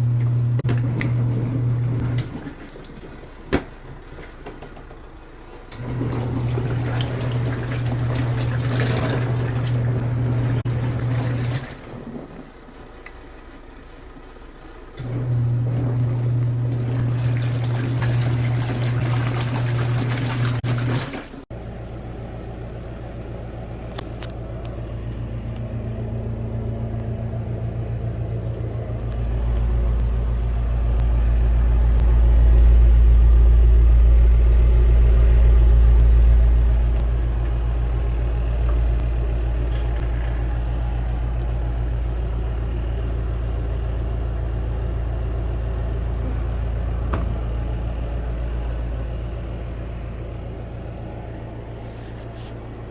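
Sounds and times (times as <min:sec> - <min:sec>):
washing machine motor hum: 0:00.0 - 0:52.9
deep rumble: 0:23.2 - 0:51.8.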